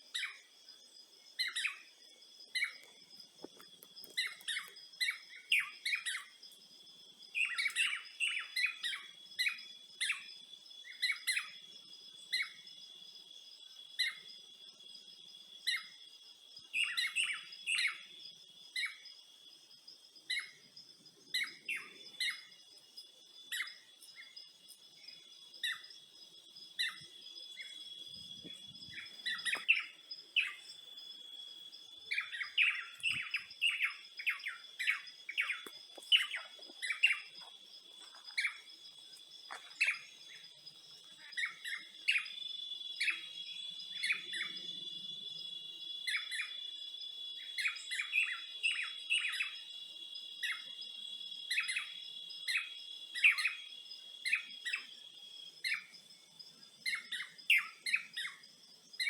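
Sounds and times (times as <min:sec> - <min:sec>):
birds chirping: 0:20.3 - 0:46.7
high-pitched insect trilling: 0:20.3 - 0:59.0.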